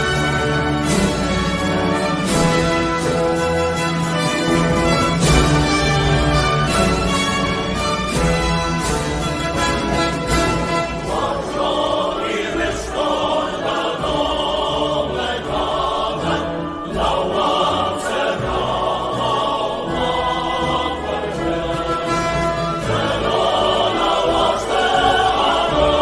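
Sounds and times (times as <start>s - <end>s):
choir singing an anthem: 0.0s - 26.0s.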